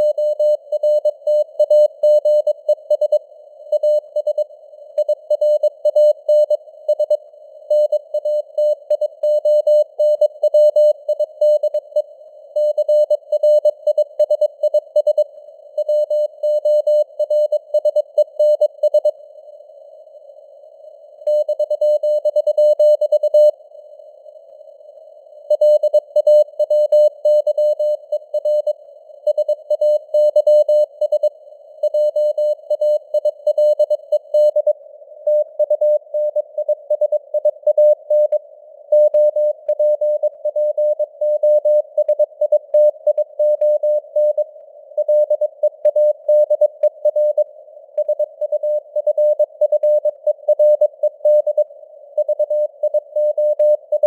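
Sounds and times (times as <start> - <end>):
morse code beeps: 48.0 - 51.6.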